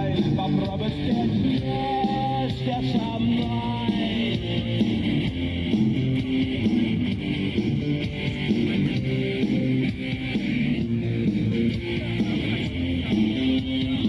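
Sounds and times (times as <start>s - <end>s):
instrumental rock music: 0.0s - 14.0s.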